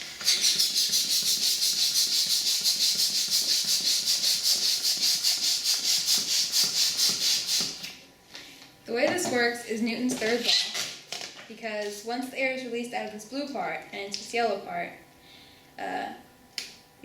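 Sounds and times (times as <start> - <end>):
balloon toy pulsing hiss: 0.0 - 7.8.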